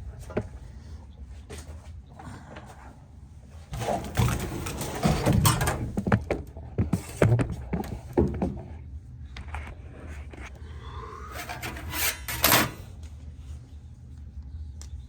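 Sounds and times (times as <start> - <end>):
objects knocking and thudding: 3.7 - 8.8.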